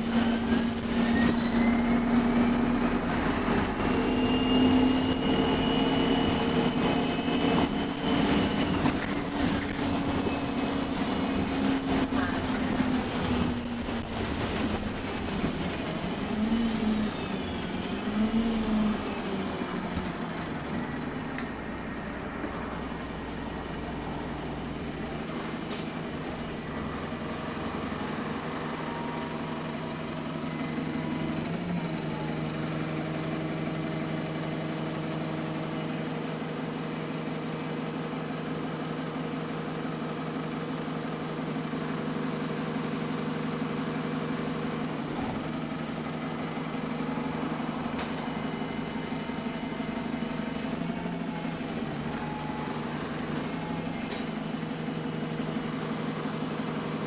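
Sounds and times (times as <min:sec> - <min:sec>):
turbo whine: 0:00.0 - 0:19.2
bus diesel engine idling: 0:00.0 - 0:57.0.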